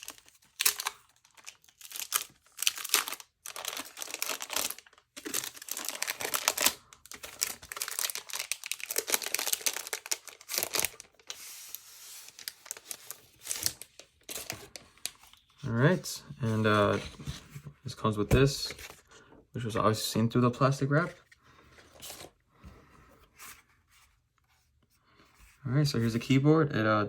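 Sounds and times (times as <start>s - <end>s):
plastic wrap crinkling: 0.0s - 15.6s.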